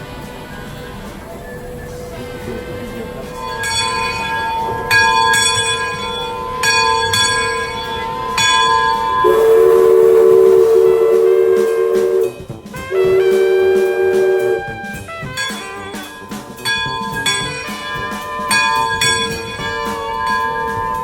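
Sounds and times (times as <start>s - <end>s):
boat bell ringing: 0.0s - 21.0s
two-note steam whistle blast: 0.0s - 21.0s.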